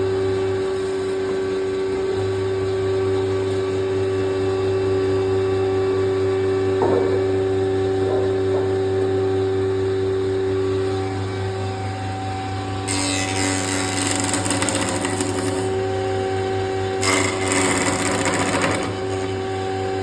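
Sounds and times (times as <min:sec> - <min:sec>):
pressing machine motor hum: 0:12.9 - 0:15.9, 0:17.0 - 0:19.6
rapid mechanical rattling: 0:17.0 - 0:19.4.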